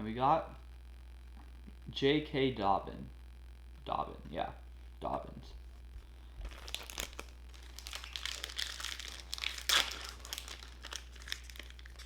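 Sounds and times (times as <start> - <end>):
wrapper crinkling and tearing: 6.4 - 12.0.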